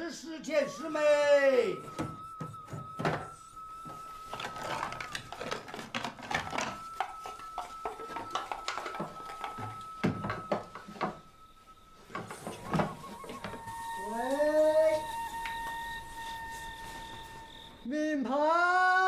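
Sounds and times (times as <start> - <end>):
faint steady high tone: 0.2 - 18.8
dishes and utensils clattering: 4.2 - 11.4.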